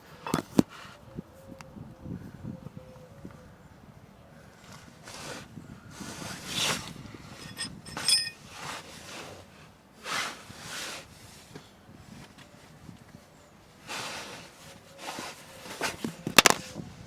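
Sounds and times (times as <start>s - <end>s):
metallic clink: 7.4s - 8.4s.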